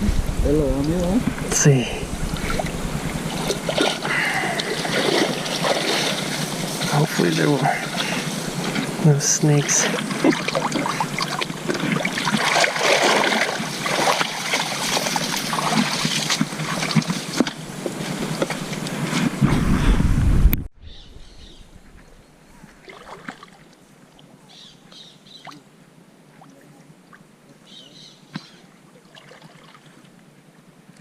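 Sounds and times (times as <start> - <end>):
rushing river water: 0.0 - 19.2, 22.7 - 31.0.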